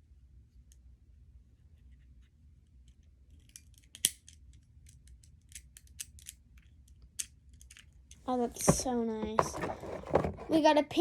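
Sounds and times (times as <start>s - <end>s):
plastic clicking and crackling: 8.4s - 10.6s.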